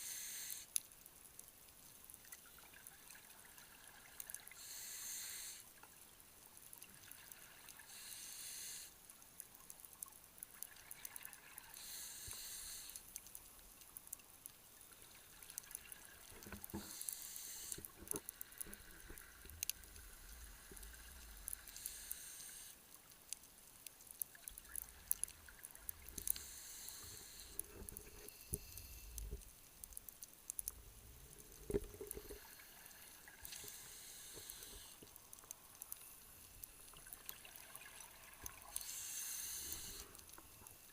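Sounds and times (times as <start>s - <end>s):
diver breathing through regulator: 4.6s - 5.6s, 7.9s - 9.0s, 11.8s - 13.0s, 16.7s - 22.8s, 26.1s - 29.4s, 31.4s - 35.0s, 38.7s - 40.3s.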